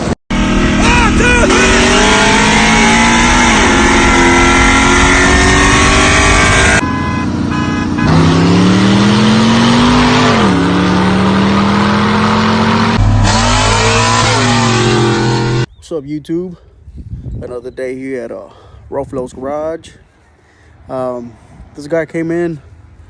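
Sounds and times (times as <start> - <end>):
car engine revving: 0.0 - 15.7.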